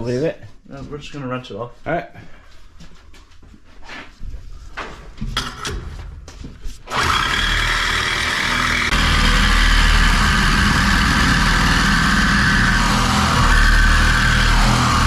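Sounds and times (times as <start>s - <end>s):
loud electric motor running: 6.9s - 15.0s.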